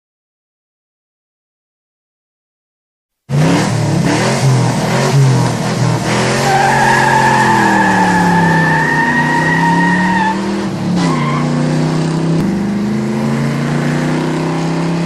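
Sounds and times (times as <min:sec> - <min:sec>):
car engine revving hard: 0:03.3 - 0:15.0
high tyre squeal: 0:06.2 - 0:11.7.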